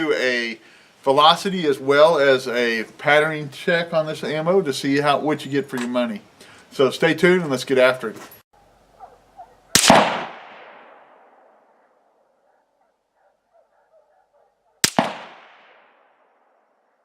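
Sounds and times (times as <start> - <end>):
rifle gunshots: 9.7 - 11.5, 14.8 - 16.1
gunshot echo: 9.7 - 11.7, 14.8 - 16.5.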